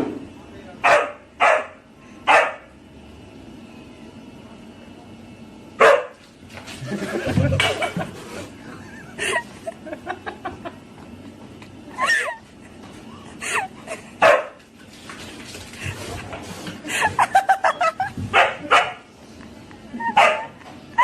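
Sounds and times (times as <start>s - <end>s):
dog barking: 0.8s - 2.7s, 5.8s - 6.2s, 14.2s - 14.6s, 18.3s - 19.0s, 20.2s - 20.5s.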